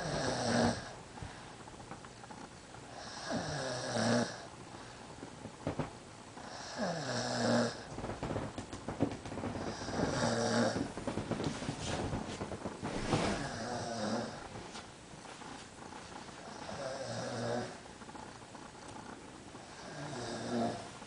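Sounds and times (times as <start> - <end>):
man snoring: 0.0 - 0.9, 3.0 - 4.5, 6.4 - 7.9, 9.7 - 10.9, 13.4 - 14.4, 16.4 - 17.8, 19.6 - 20.9
quiet breathing: 0.0 - 1.8, 2.9 - 5.3, 9.5 - 12.1.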